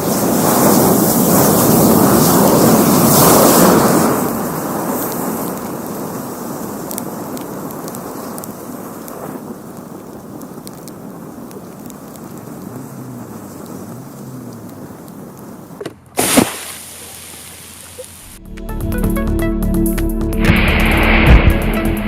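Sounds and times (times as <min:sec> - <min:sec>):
match heads flaring hiss: 0:00.0 - 0:18.4
fire crackling with pops: 0:00.0 - 0:18.7.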